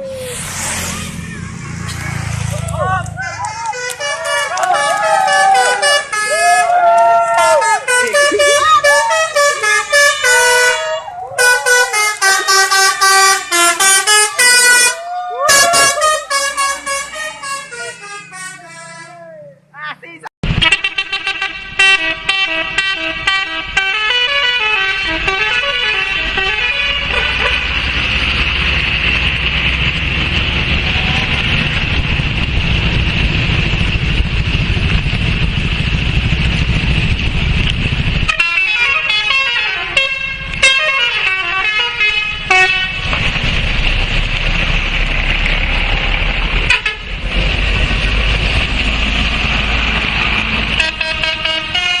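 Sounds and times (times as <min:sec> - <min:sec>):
musical bus horn tune: 0:03.7 - 0:06.8, 0:07.4 - 0:19.2, 0:20.5 - 0:27.7, 0:38.2 - 0:43.2, 0:46.6 - 0:47.1, 0:50.7 - 0:52.0.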